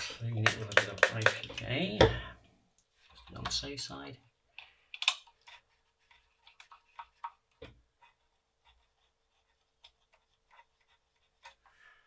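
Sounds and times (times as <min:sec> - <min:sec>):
knock: 0:00.5 - 0:01.4
clicks and scrapes of cleaning: 0:00.5 - 0:01.5.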